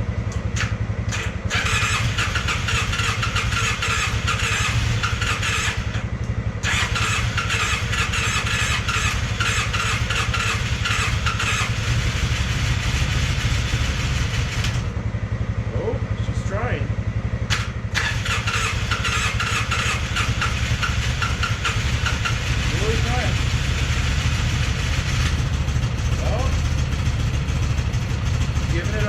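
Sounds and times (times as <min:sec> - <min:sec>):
engine cranking on electric starter: 0:00.6 - 0:06.0, 0:06.6 - 0:14.9, 0:17.5 - 0:25.5.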